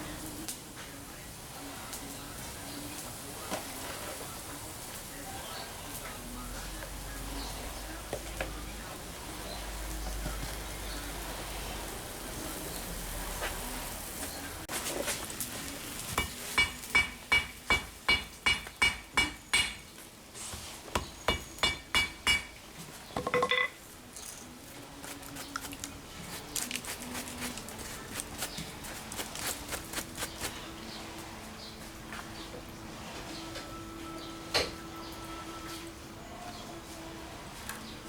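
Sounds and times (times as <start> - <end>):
hammer ringing on steel anvil: 16.2 - 19.8, 21.3 - 22.5.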